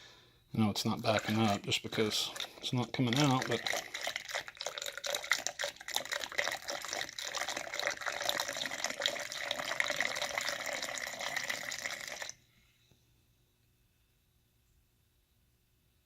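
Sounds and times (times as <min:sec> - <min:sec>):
liquid pouring into drain: 0:00.8 - 0:12.4.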